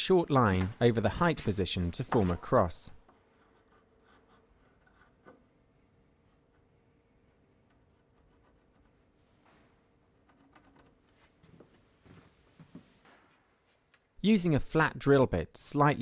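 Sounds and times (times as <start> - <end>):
marking gauge scratching wood: 3.2 - 5.4.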